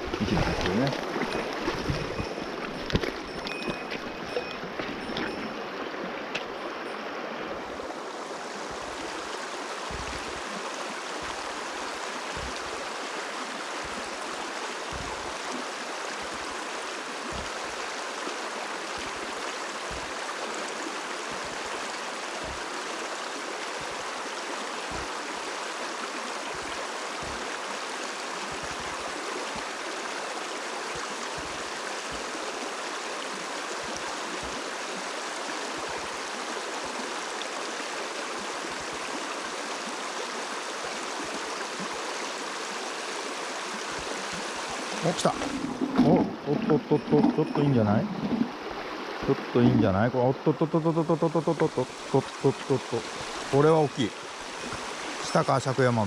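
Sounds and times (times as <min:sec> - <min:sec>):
water rushing over rocks: 0:00.0 - 0:56.0
short low thumps: 0:09.9 - 0:10.4, 0:12.4 - 0:12.7, 0:14.9 - 0:15.3, 0:17.3 - 0:17.7, 0:24.9 - 0:25.2.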